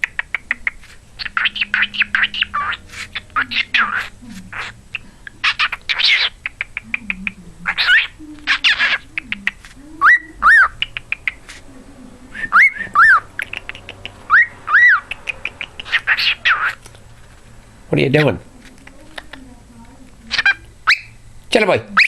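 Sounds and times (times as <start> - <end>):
cockatiel whistling: 0.0 - 7.1, 7.7 - 11.4, 12.3 - 16.8, 20.3 - 21.2
cockatiel chattering: 0.0 - 11.6, 12.4 - 17.4, 18.1 - 19.5, 20.1 - 21.2.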